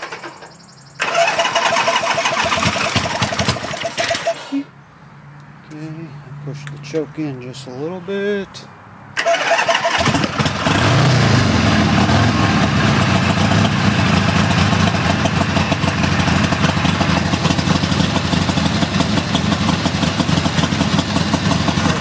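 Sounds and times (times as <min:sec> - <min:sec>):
motorcycle engine starting and running: 0:00.0 - 0:04.6, 0:09.2 - 0:22.0.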